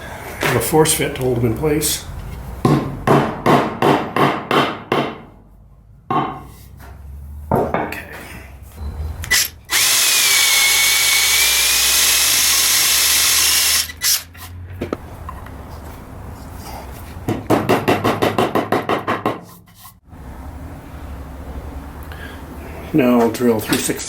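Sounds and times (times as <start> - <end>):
power drill whining: 9.2 - 14.3.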